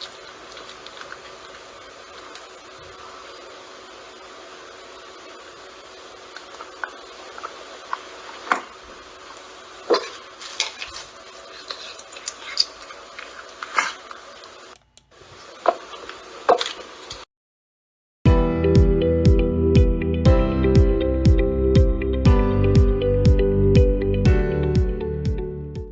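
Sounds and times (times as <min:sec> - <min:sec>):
steady background hiss: 0:00.0 - 0:17.2.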